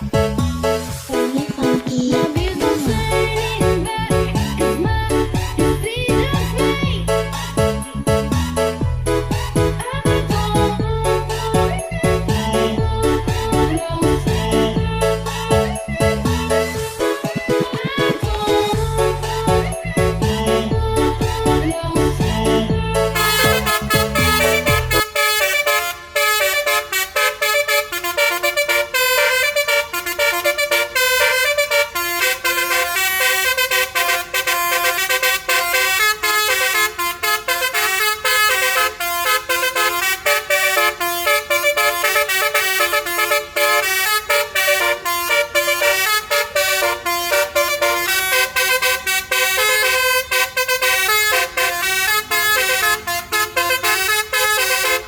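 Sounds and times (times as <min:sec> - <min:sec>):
musical bus horn playing tune: 0:23.1 - 0:55.0.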